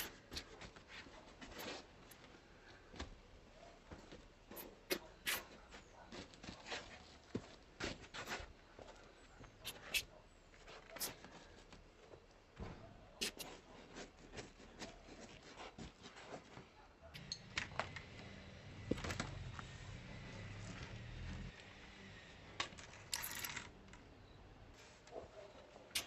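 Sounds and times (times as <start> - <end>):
hard objects clicking and clinking: 22.6 - 23.8.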